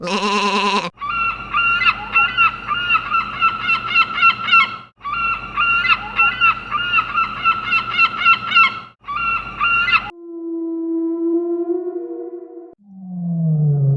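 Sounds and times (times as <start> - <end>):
geese honking: 1.0 - 10.1.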